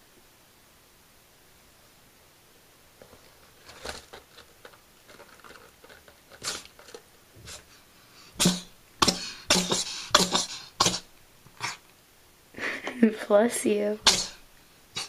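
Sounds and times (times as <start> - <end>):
cat sneezing: 6.4 - 6.8, 7.4 - 11.8, 14.0 - 15.0.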